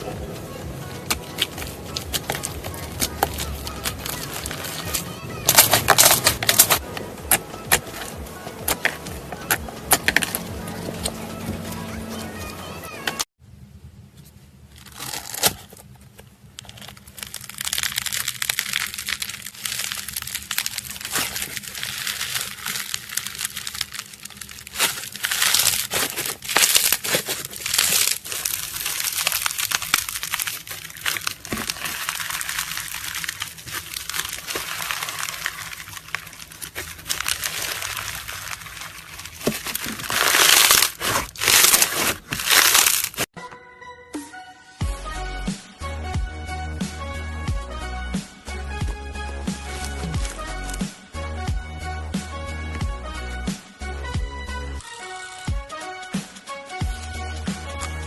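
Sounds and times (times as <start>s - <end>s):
slime crackling and popping: 1.1s - 8.1s, 14.8s - 15.7s, 16.6s - 43.3s.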